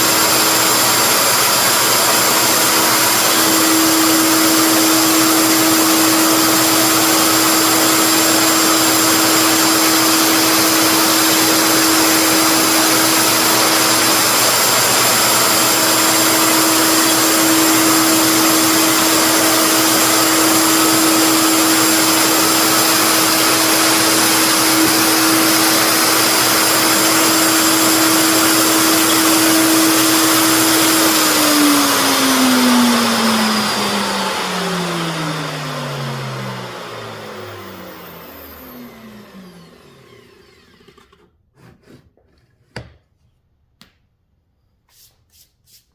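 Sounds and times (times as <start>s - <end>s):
motor spinning down: 0.0s - 41.3s
wood router whining: 0.0s - 42.4s.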